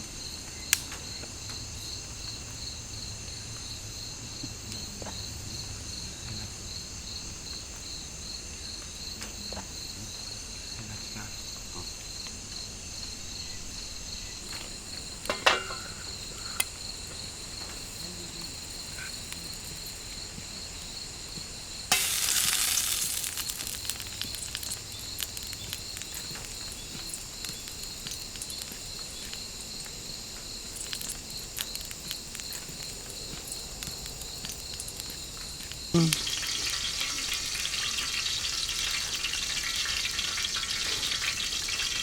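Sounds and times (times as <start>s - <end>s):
insects chirring: 0.0s - 42.0s
sudden loud hiss: 21.8s - 28.0s.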